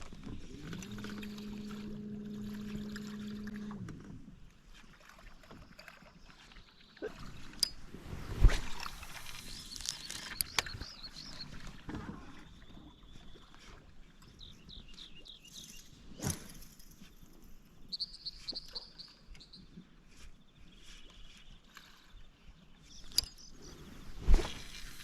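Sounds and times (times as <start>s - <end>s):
boat noise: 0.0s - 13.8s
faint water noise: 0.0s - 25.0s
small birds chirping: 9.3s - 11.7s, 17.9s - 24.1s.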